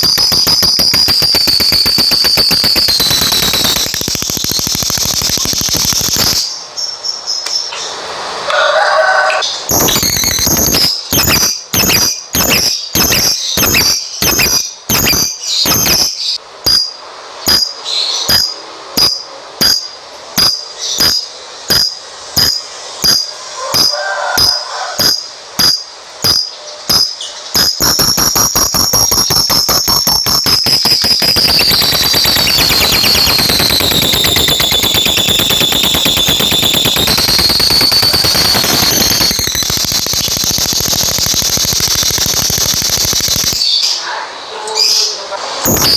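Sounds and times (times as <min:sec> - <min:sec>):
bird chirping and chattering: 0:09.7 - 0:45.9.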